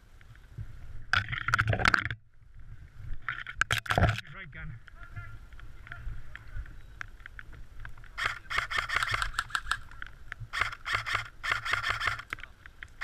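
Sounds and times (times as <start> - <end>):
airsoft gun full-auto bursts: 8.2 - 9.8, 10.5 - 12.3.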